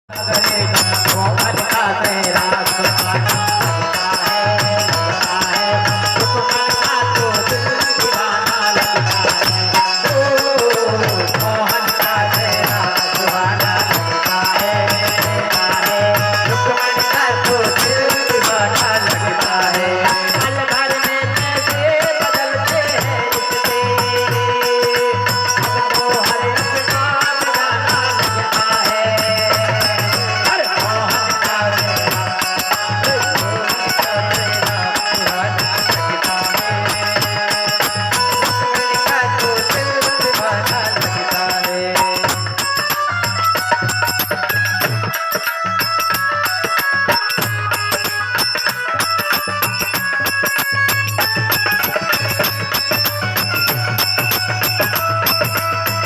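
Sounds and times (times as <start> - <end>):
hand percussion: 0.0 - 56.0
instrumental devotional music: 0.1 - 56.0.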